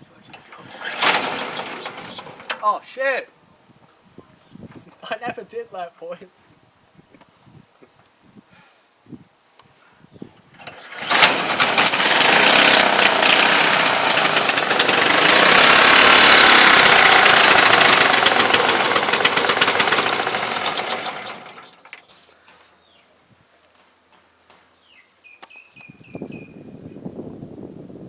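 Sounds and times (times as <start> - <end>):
small petrol engine running: 0.4 - 2.8, 10.6 - 22.0.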